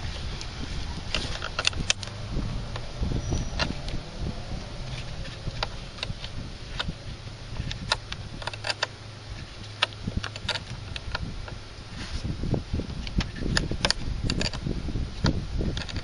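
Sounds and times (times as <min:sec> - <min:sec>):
steady low hum: 0:00.0 - 0:16.0
hand tools clicking on metal: 0:07.6 - 0:08.9.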